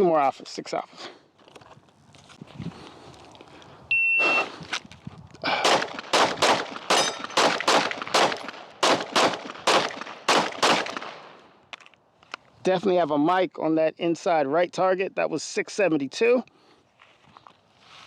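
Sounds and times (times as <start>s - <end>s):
shot timer beep: 3.9s - 4.4s
pistol shots: 5.5s - 11.5s.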